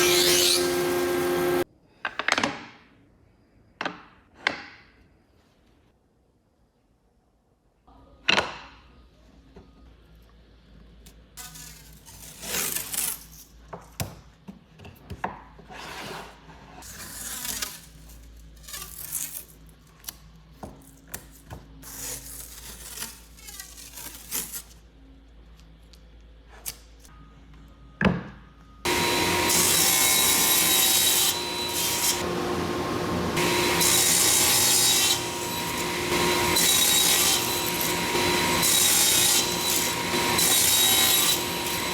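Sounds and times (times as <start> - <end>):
power tool whining: 0.0 - 1.6, 28.9 - 41.9.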